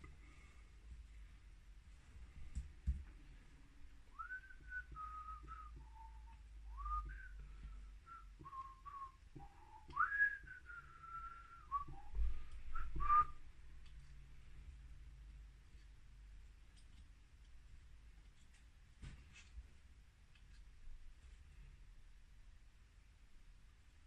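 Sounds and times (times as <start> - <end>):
person whistling a slow tune: 4.1 - 13.4.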